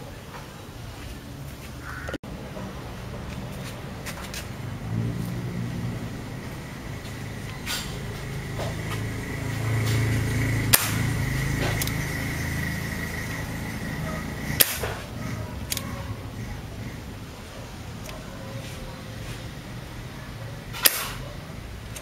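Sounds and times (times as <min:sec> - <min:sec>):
steady low hum: 0:00.0 - 0:22.0
airsoft gun shots: 0:10.7 - 0:11.9, 0:14.5 - 0:15.1, 0:20.7 - 0:21.2.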